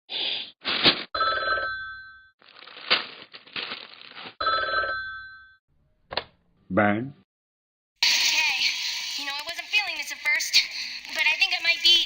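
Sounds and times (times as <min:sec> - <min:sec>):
telephone ringing: 0:01.2 - 0:02.3, 0:04.4 - 0:05.6
crackly hiss: 0:08.0 - 0:11.8.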